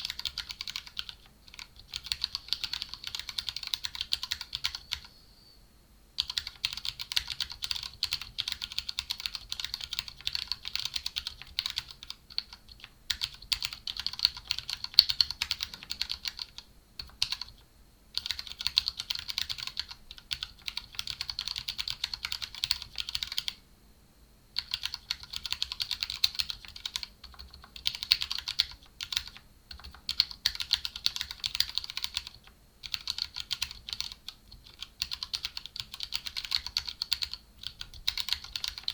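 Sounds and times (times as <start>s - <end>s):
typing on mechanical keyboard: 0.0s - 5.1s, 6.2s - 17.6s, 18.2s - 23.6s, 24.6s - 38.9s.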